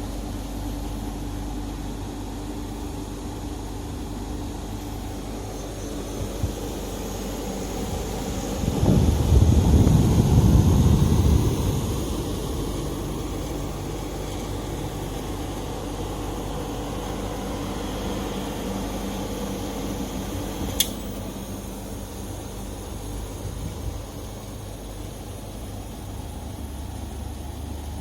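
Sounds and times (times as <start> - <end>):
air conditioner humming: 0.0 - 28.0
sharp click: 20.6 - 21.2.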